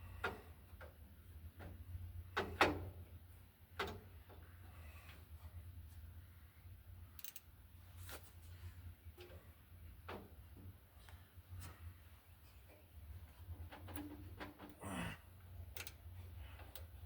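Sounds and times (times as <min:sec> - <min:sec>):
wrench clinking on nut: 0:15.8 - 0:16.0.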